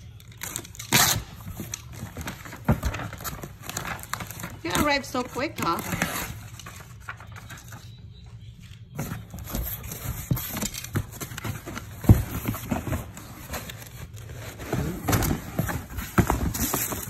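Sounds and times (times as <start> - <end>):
cardboard boxes rustling and scraping: 9.0 - 17.0.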